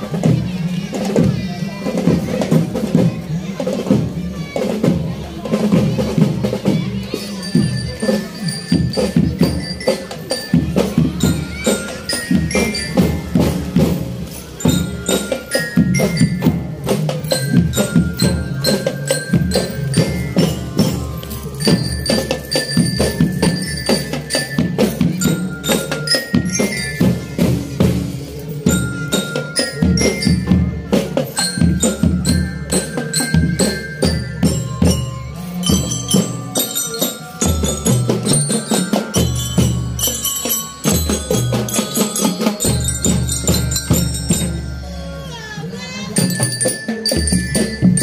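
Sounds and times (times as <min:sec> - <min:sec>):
snare and bass drums: 0:00.0 - 0:36.6
glockenspiel melody: 0:05.9 - 0:48.0.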